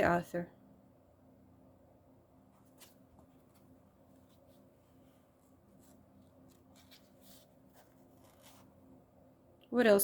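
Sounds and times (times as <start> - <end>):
faint low hum: 0.0 - 10.0
pages turning: 2.6 - 8.8.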